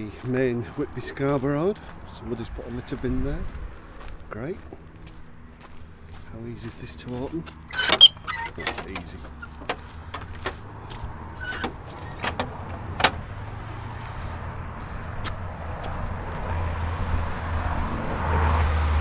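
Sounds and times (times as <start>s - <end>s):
car approaching on road: 0.0s - 19.0s
short high squeals: 7.7s - 13.2s.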